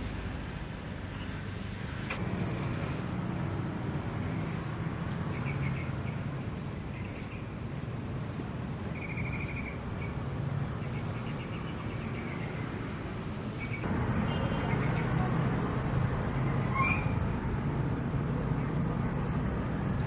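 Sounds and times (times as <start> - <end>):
small bird chirping: 8.9 - 12.6.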